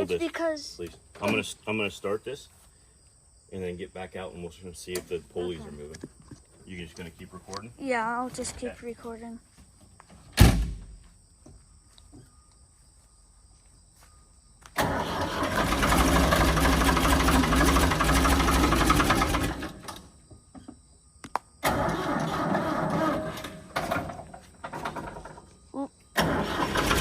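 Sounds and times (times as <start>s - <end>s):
engine starter cranking: 14.8s - 20.1s, 21.6s - 25.5s, 26.1s - 27.0s.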